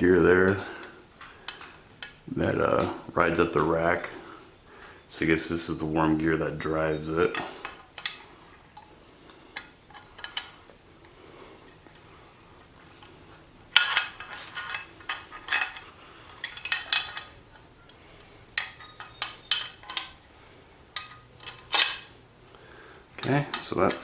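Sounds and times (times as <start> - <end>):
metal parts clinking and clanking: 0.3 - 4.2, 5.6 - 10.8, 12.6 - 22.2.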